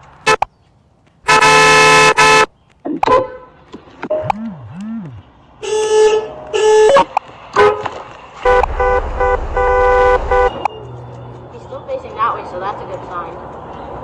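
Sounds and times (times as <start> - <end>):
vehicle horn honking: 1.3 - 2.5, 5.6 - 7.8, 8.5 - 10.7.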